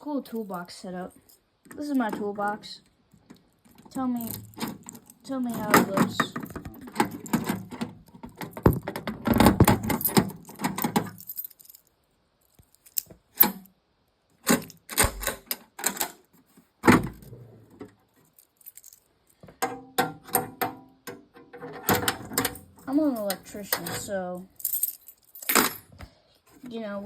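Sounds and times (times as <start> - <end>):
metal tools rattling in toolbox: 4.2 - 11.8.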